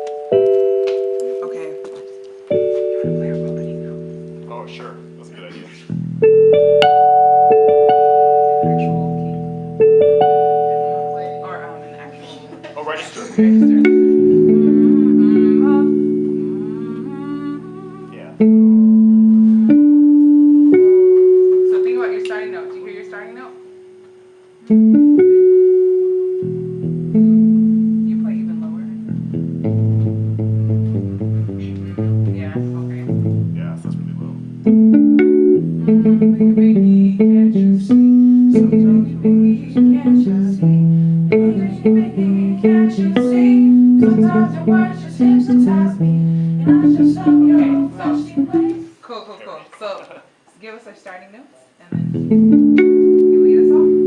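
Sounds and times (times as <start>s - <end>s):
held instrument chord: 0.0s - 48.9s, 52.0s - 54.0s
guitar-like melody: 0.0s - 49.0s, 51.9s - 54.0s
rising single notes: 13.4s - 33.6s, 34.6s - 49.0s, 52.1s - 54.0s.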